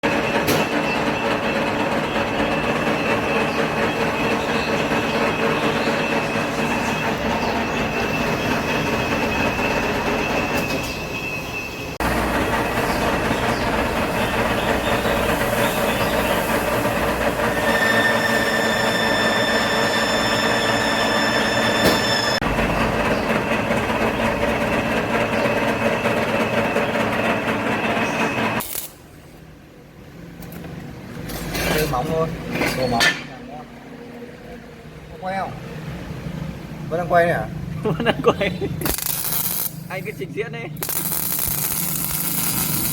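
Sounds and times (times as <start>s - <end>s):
welder whine: 0.1s - 29.0s, 38.8s - 40.2s, 40.8s - 42.9s
welder arc crackling: 28.6s - 29.0s, 38.8s - 40.2s, 40.8s - 42.9s.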